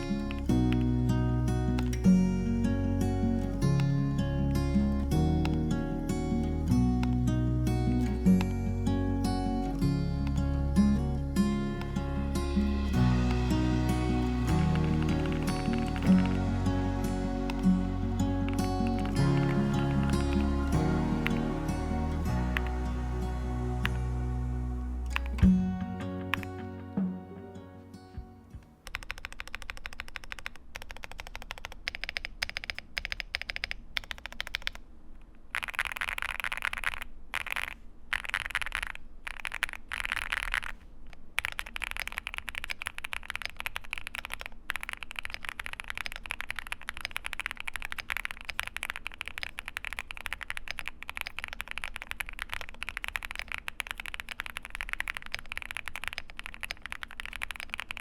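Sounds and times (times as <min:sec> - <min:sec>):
keyboard key clicks: 0:28.8 - 0:34.8, 0:35.6 - 0:58.0.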